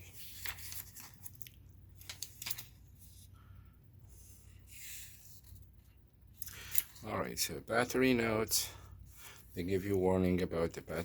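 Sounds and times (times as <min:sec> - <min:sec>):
paper leaflet rustling: 0:00.0 - 0:03.3.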